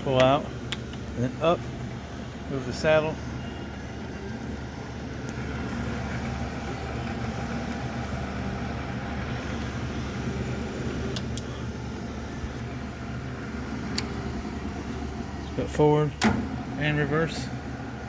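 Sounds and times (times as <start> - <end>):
lathe running hum: 0.0 - 18.0
sharp clicks: 0.1 - 1.1, 11.1 - 11.6, 13.8 - 14.2.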